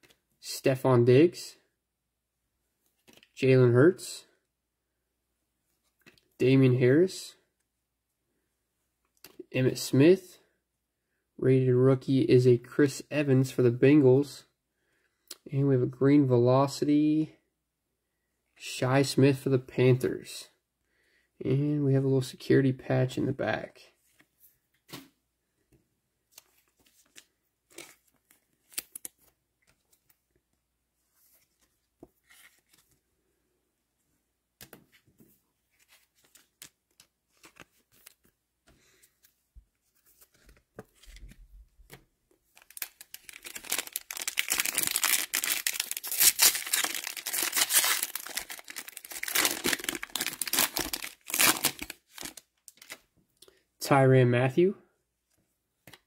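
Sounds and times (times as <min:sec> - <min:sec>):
cards rustling and clicking: 0:02.9 - 0:03.4, 0:26.3 - 0:30.3, 0:31.2 - 0:33.0, 0:34.6 - 0:53.0
wrapper tearing and crinkling: 0:42.6 - 0:53.0.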